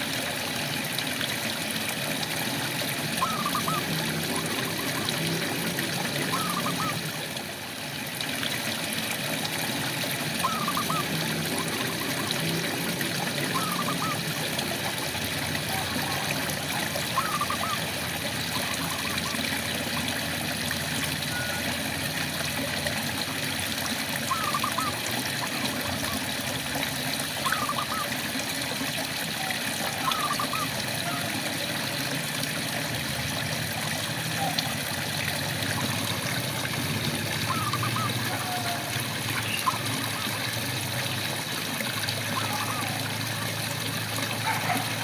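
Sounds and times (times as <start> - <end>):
frog calling: 3.2 - 5.3, 6.1 - 7.1, 10.4 - 12.2, 13.4 - 14.4, 15.7 - 19.4, 21.3 - 21.8, 24.2 - 26.1, 27.4 - 28.2, 29.4 - 31.3, 37.4 - 40.4, 42.3 - 43.2.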